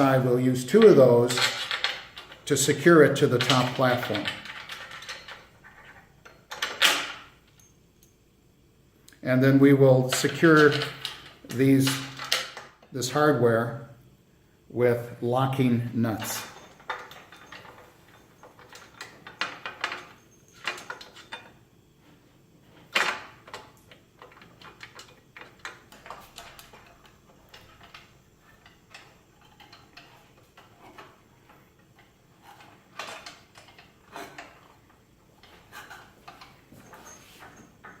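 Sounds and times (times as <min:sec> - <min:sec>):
metallic clicks and knocks of bolts: 0:16.2 - 0:21.6, 0:22.7 - 0:38.0.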